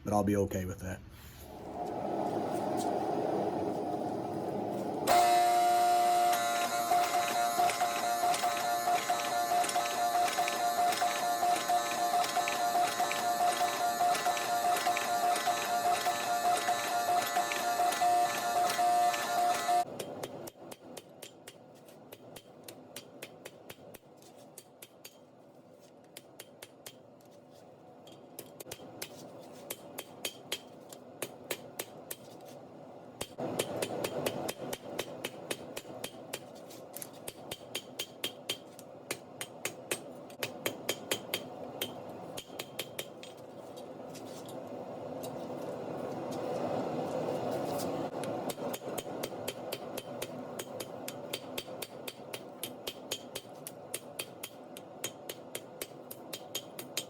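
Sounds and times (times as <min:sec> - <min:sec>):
background rumble: 0:01.4 - 0:05.1
hammer striking hot steel: 0:28.4 - 0:32.3, 0:33.2 - 0:36.6, 0:37.2 - 0:43.4, 0:48.2 - 0:57.0.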